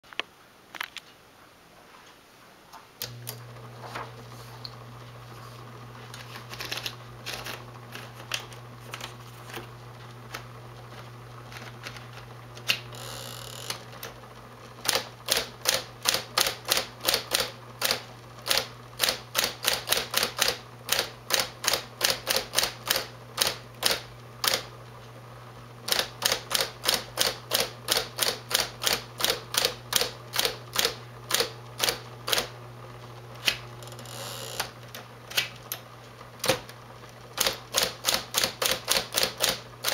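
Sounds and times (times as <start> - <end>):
typewriter motor humming: 6.0 - 24.8, 25.8 - 32.6, 33.2 - 39.9
typewriter keys striking: 14.8 - 24.7, 25.9 - 32.5, 37.4 - 39.9.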